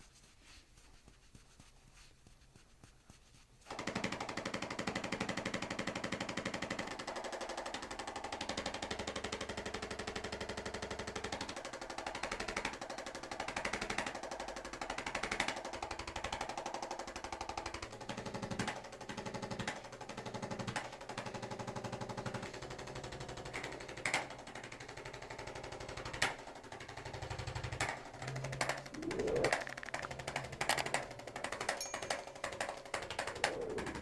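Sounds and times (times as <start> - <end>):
rapid mechanical pulsing: 24.7 - 34.0.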